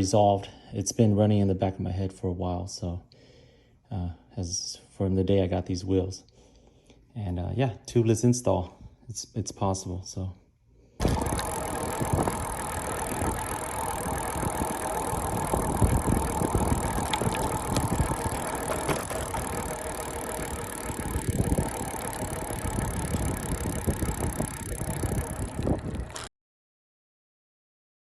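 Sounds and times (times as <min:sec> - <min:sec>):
wind buffeting microphone: 0:11.0 - 0:26.2
bicycle tyre and road noise: 0:11.0 - 0:26.3.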